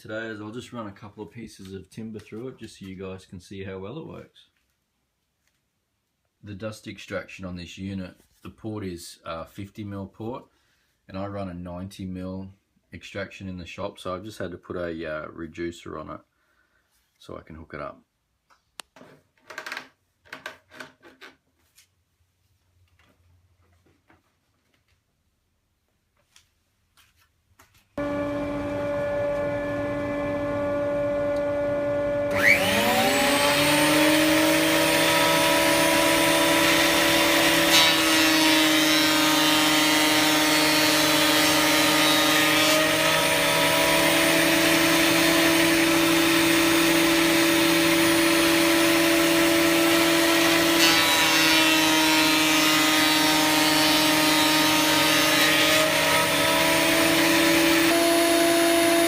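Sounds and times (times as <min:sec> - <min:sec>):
dust extractor running: 0:28.0 - 0:38.4, 0:40.6 - 0:51.1, 0:54.4 - 0:59.0
thickness planer motor whine: 0:28.0 - 0:59.0.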